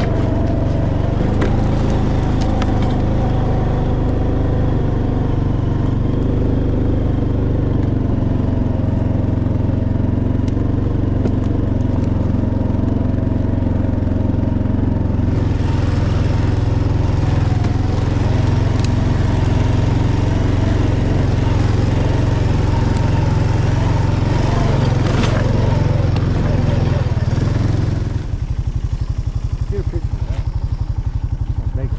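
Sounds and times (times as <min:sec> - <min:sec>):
vehicle engine droning: 0:00.0 - 0:31.9
tyre and road noise hiss: 0:15.0 - 0:31.1.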